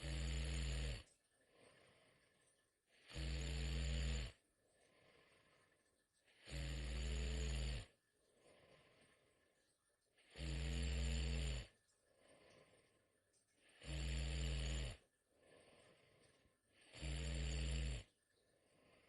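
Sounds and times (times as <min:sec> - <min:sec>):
girl snoring heavily: 0:00.0 - 0:01.1, 0:02.9 - 0:04.4, 0:06.3 - 0:08.0, 0:10.3 - 0:11.7, 0:13.7 - 0:15.0, 0:16.8 - 0:18.1
quiet breathing: 0:00.0 - 0:19.0.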